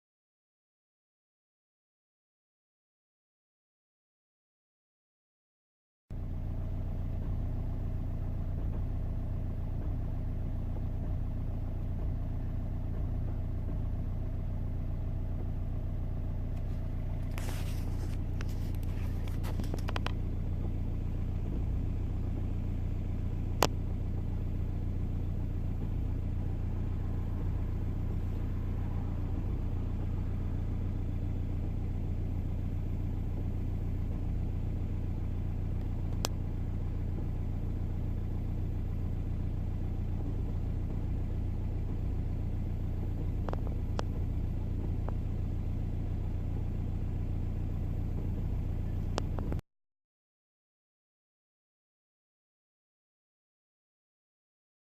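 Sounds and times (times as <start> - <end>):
diesel engine idling: 6.1 - 49.6.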